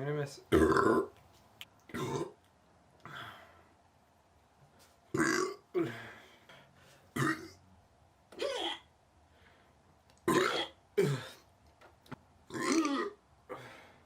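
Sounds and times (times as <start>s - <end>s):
person burping: 0.5s - 1.1s, 1.9s - 2.4s, 5.1s - 6.2s, 7.2s - 7.6s, 8.4s - 8.9s, 10.2s - 11.4s, 12.5s - 13.2s.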